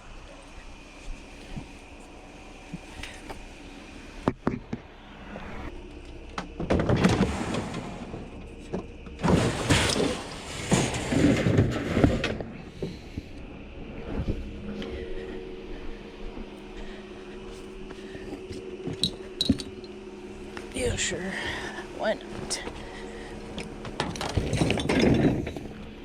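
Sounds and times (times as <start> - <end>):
junk rustling and clattering: 5.7 - 26.0.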